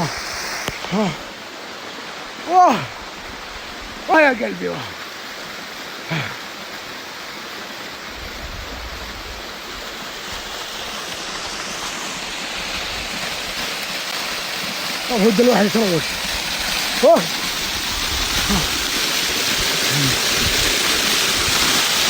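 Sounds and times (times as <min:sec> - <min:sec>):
waterfall rushing: 0:00.0 - 0:22.0
short voice sound: 0:18.5 - 0:18.7.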